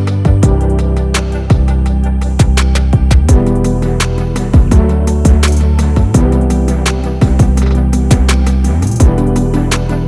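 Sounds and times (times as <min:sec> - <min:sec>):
bass: 0:00.0 - 0:10.0
drum beat: 0:04.6 - 0:06.4, 0:07.2 - 0:08.4.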